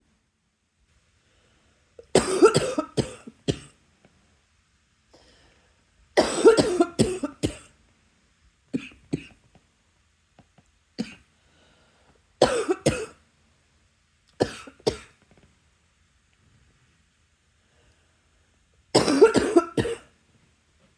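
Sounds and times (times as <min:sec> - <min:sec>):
person coughing: 0:02.0 - 0:03.7, 0:06.2 - 0:07.7, 0:12.4 - 0:13.2, 0:14.4 - 0:15.1, 0:19.0 - 0:20.1.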